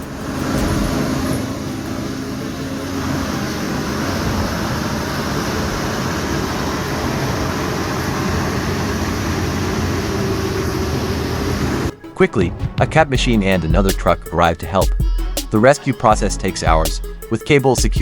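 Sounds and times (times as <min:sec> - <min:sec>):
broad noisy hiss: 0:00.0 - 0:11.9
heavy engine drone: 0:00.0 - 0:14.8.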